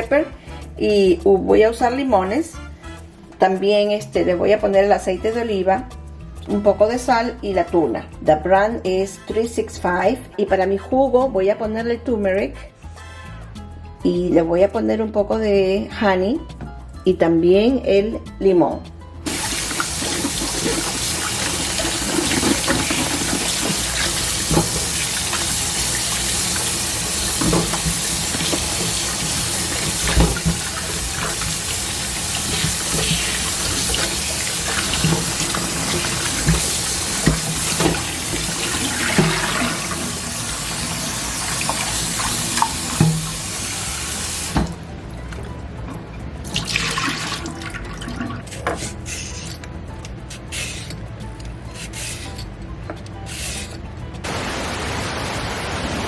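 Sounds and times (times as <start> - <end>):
kitchen faucet running into sink: 19.3 - 44.8, 46.4 - 49.0.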